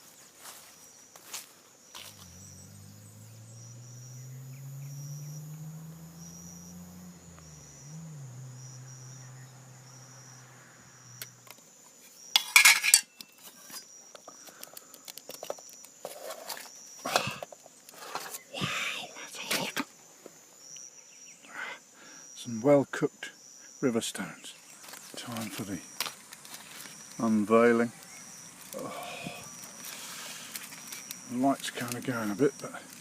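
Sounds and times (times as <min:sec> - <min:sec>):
insects chirping: 0:00.0 - 0:33.0
low hum: 0:02.0 - 0:11.6
metal cup clattering and clinking: 0:12.4 - 0:13.1.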